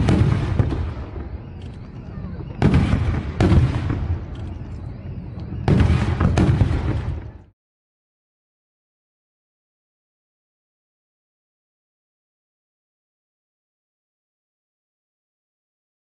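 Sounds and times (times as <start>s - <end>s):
fireworks exploding: 0.0s - 7.5s.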